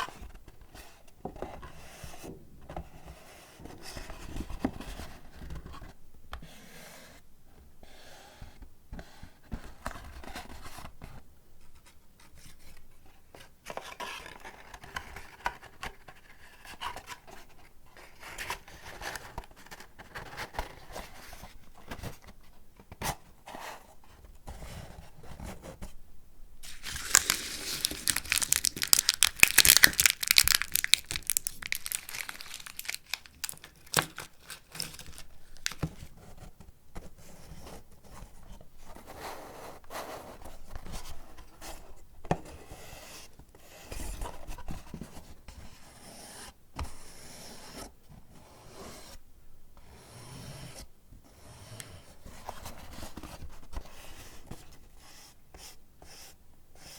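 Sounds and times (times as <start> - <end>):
paper wrapping crinkling and tearing: 26.6 - 36.1
paper rustling: 26.6 - 36.5.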